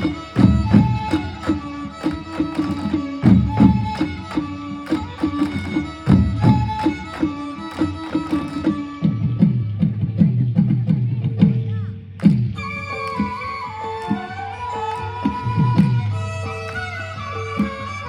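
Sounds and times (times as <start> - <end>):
drums in fast rhythm: 0.0 - 13.4.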